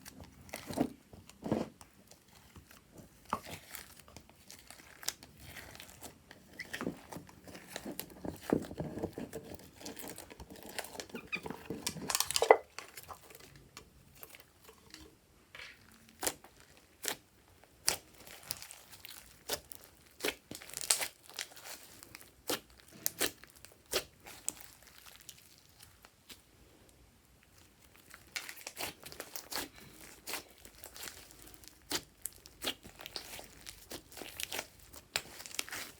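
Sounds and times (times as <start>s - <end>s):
hands squishing sticky slime: 0.0s - 12.2s, 15.8s - 26.5s, 27.4s - 35.9s.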